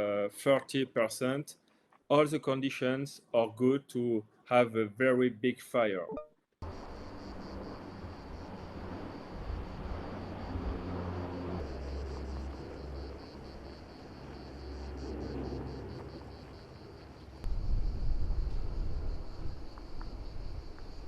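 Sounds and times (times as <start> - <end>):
low engine drone: 6.6 - 20.7
high pulsing buzz: 6.6 - 21.0.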